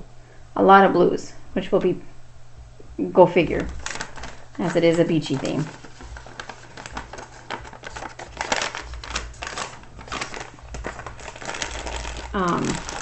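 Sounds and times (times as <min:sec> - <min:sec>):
plastic baggies crinkling: 0:03.4 - 0:13.0.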